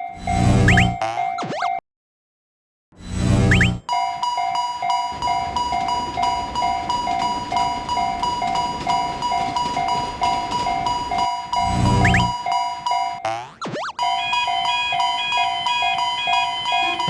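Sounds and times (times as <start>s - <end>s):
electronic railroad crossing bell: 0.0s - 1.4s, 3.0s - 13.4s, 14.0s - 17.0s
cartoon sound effect: 0.6s - 1.8s, 3.4s - 3.8s, 13.2s - 14.0s.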